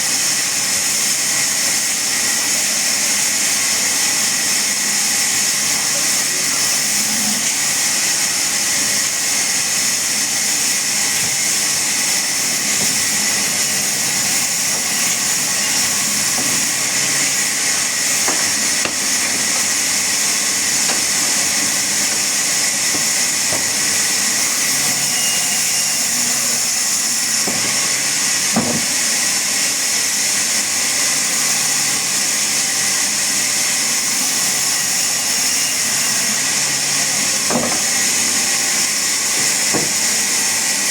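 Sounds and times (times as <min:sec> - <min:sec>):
power saw running: 0:00.0 - 0:40.9.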